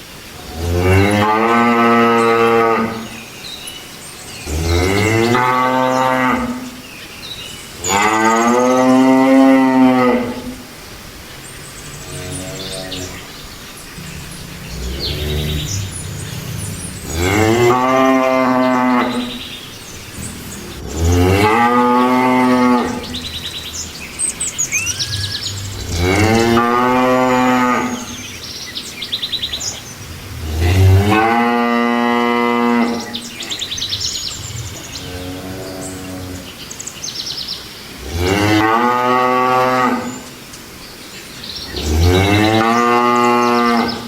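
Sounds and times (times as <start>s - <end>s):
cattle mooing: 14.0s - 19.6s, 20.2s - 23.5s, 24.8s - 28.2s, 30.4s - 33.2s.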